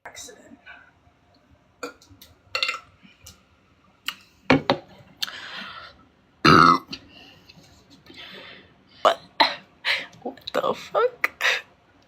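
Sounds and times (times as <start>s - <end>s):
woman burping: 6.4s - 7.0s.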